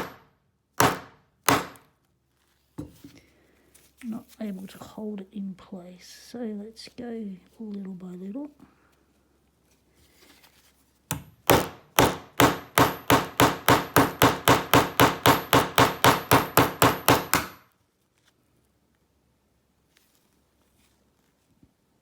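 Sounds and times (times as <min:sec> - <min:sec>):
tool striking plastic padlock: 0:00.0 - 0:00.2, 0:00.8 - 0:01.9, 0:11.1 - 0:17.6.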